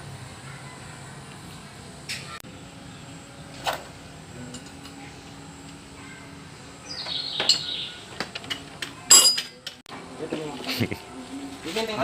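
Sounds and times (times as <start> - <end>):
metallic clinks of tools: 9.1 - 9.8.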